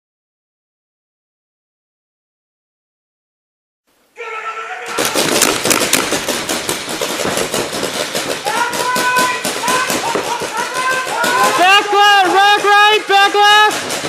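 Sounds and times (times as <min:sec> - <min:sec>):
players shouting: 0:04.1 - 0:14.0
paintball markers firing: 0:04.9 - 0:14.0.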